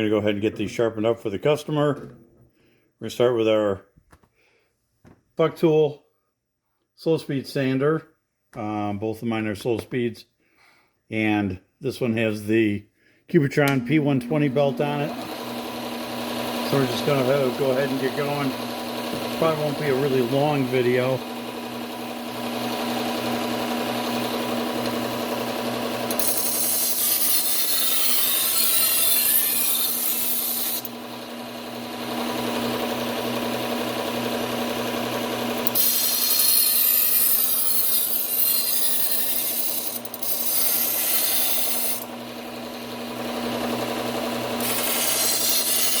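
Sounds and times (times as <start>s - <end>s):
belt sander humming: 13.5s - 46.0s
knife blade grinding on belt: 26.1s - 30.9s, 35.6s - 42.1s, 44.6s - 46.0s.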